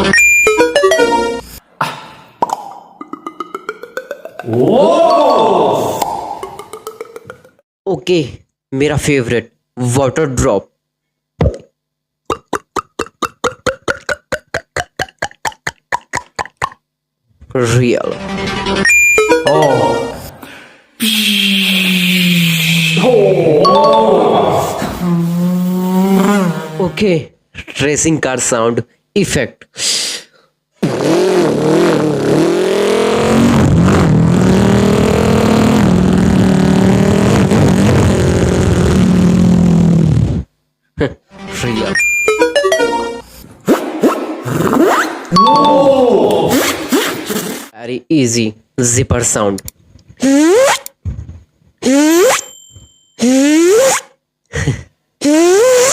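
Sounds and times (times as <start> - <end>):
beatboxed water drop plops: 1.8 - 4.6, 6.0 - 7.6, 12.3 - 16.8
vocal imitation of racing car engine: 21.0 - 27.0, 30.8 - 40.1.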